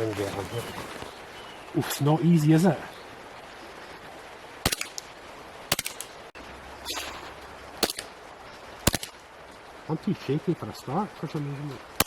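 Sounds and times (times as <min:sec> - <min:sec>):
airsoft rifle shots: 0:04.7 - 0:05.0, 0:05.7 - 0:06.1, 0:07.8 - 0:08.1, 0:08.9 - 0:09.2.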